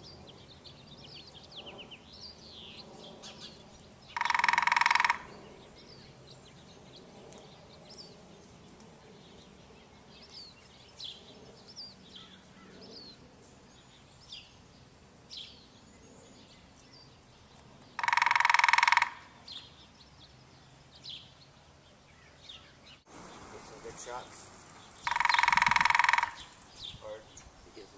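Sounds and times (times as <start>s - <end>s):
small birds chirping: 0.0s - 27.9s
woodpecker drumming: 3.3s - 6.0s, 17.9s - 19.8s, 23.1s - 27.9s.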